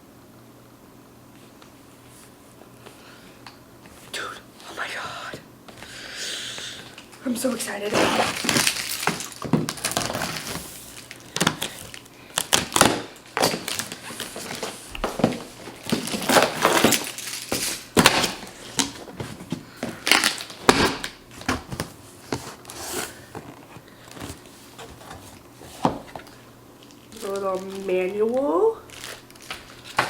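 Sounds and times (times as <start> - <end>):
cardboard packaging crinkling: 7.8 - 30.0.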